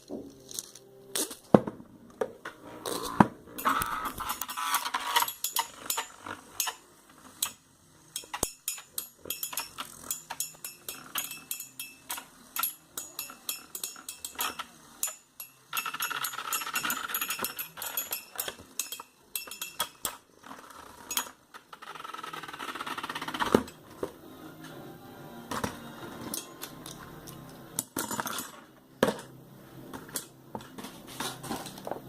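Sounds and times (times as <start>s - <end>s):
spinning top whirring: 2.8s - 23.9s.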